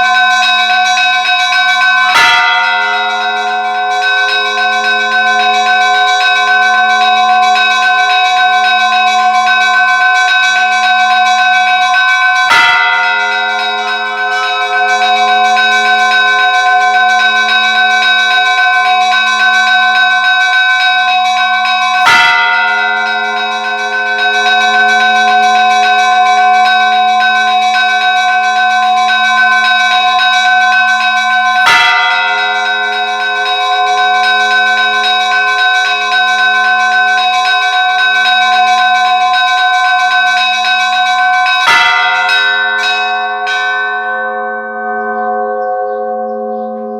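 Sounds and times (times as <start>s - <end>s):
large church bell tolling: 0.0s - 46.9s.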